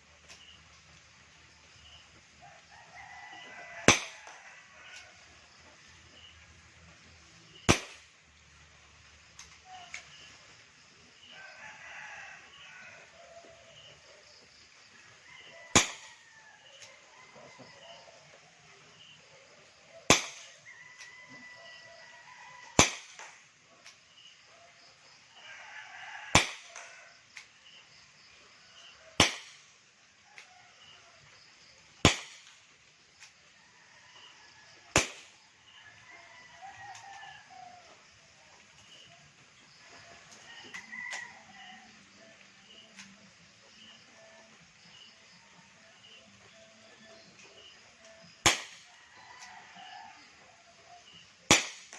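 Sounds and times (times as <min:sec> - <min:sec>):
airsoft revolver shots: 0:03.9 - 0:04.4, 0:07.7 - 0:08.1, 0:15.7 - 0:16.2, 0:20.1 - 0:20.6, 0:22.8 - 0:23.4, 0:26.3 - 0:26.8, 0:29.2 - 0:29.7, 0:32.0 - 0:32.6, 0:34.9 - 0:35.4, 0:48.4 - 0:48.9, 0:51.5 - 0:51.9.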